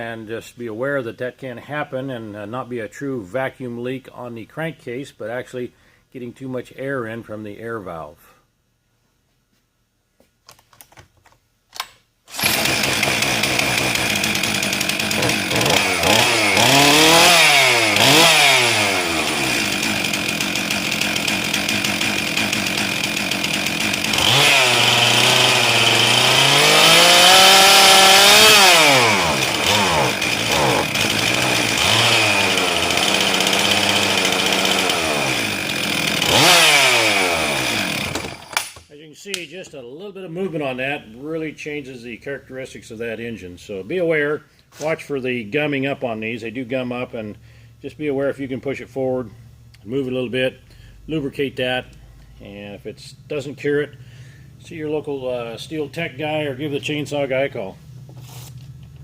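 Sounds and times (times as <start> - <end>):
chainsaw starting and revving: 12.3 - 38.9.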